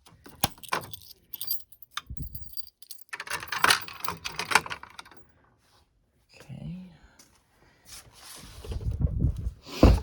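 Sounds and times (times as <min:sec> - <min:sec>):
keys jangling: 0:00.2 - 0:05.3.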